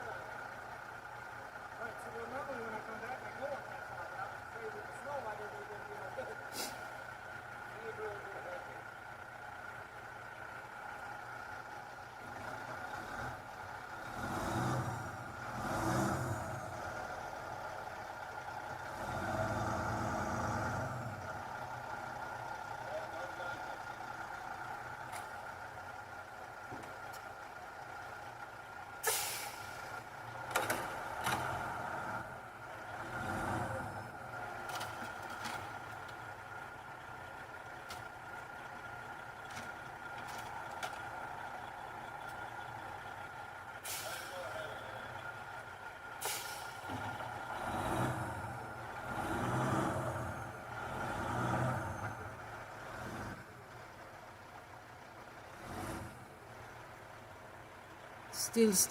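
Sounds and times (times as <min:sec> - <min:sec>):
heavy vehicle engine running: 0:00.0 - 0:58.9
truck air brakes hissing: 0:06.4 - 0:07.1, 0:29.0 - 0:30.0, 0:43.8 - 0:44.6, 0:46.1 - 0:47.0.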